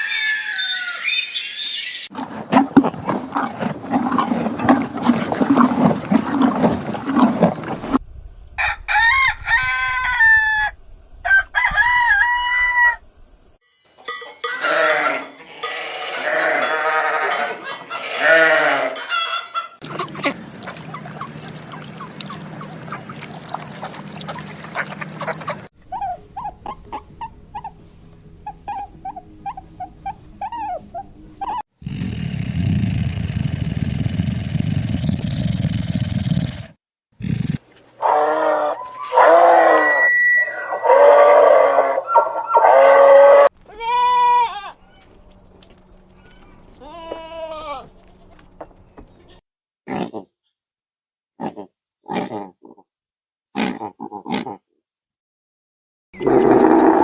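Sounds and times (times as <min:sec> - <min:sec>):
roosters crowing: 0:00.0 - 0:01.2, 0:08.6 - 0:13.0, 0:14.4 - 0:23.2, 0:38.0 - 0:45.2
hens clucking: 0:02.1 - 0:08.0, 0:19.0 - 0:25.7.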